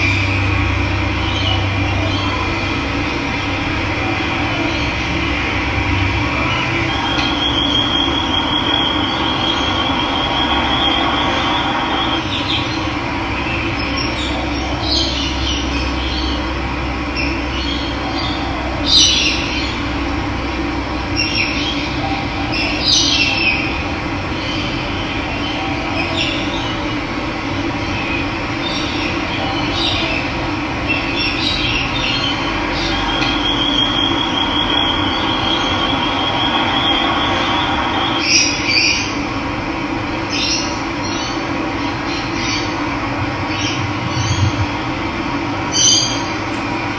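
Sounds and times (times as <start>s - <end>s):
birds chirping: 45.6s - 46.9s
steady high trill: 45.6s - 46.9s.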